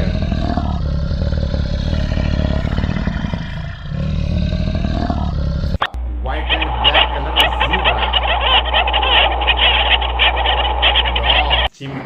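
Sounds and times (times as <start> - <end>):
polar bear growling: 0.0 - 5.9.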